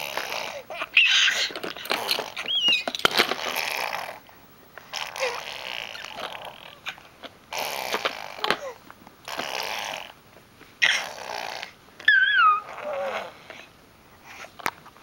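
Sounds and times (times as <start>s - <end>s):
baby blowing raspberries: 0.0s - 10.2s, 10.8s - 13.7s
baby squealing: 0.2s - 3.8s, 10.8s - 11.3s, 12.0s - 13.4s.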